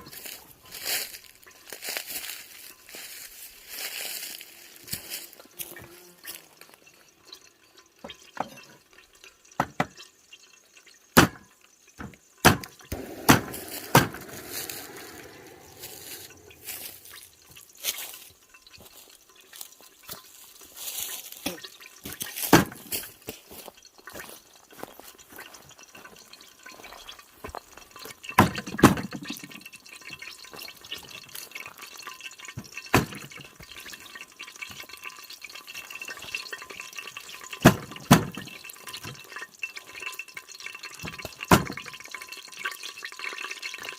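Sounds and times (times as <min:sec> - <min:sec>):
water pouring and dripping: 0:00.0 - 0:43.9
sharp knocks and clatters: 0:09.6 - 0:10.0, 0:12.0 - 0:16.9, 0:32.9 - 0:33.8.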